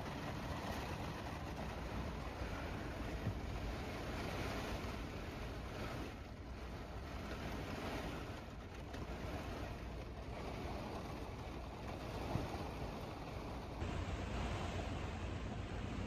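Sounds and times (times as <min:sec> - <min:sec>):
low wind rumble: 0:10.4 - 0:16.0
rain lashing a van: 0:13.8 - 0:16.0.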